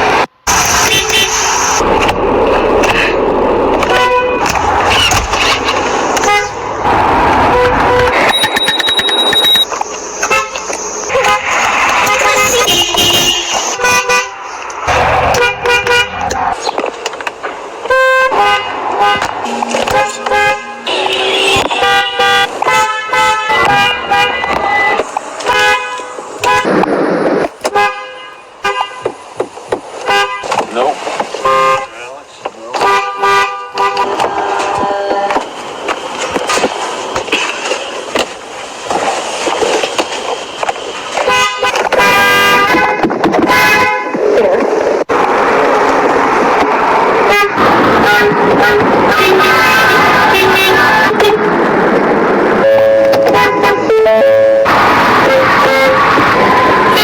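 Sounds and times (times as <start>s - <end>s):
steady background noise: 0.0s - 57.0s
car horn tooting: 0.5s - 1.8s, 3.8s - 5.3s, 6.2s - 6.6s, 7.4s - 14.4s, 15.3s - 16.2s, 17.8s - 26.8s, 27.6s - 29.2s, 30.0s - 30.8s, 31.4s - 32.1s, 32.7s - 35.5s, 41.2s - 44.3s, 47.2s - 51.5s, 52.6s - 57.0s.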